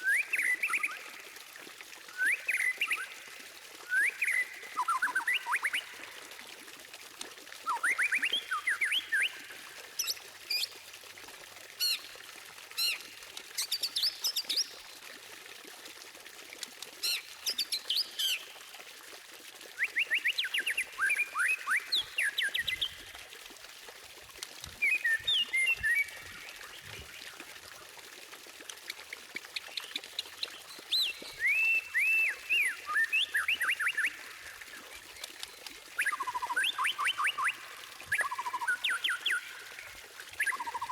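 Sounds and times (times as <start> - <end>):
songbird singing trills and whistles: 2.1 - 3.2, 3.8 - 6.0, 7.6 - 10.7, 19.8 - 23.0, 24.8 - 27.1, 29.8 - 40.9.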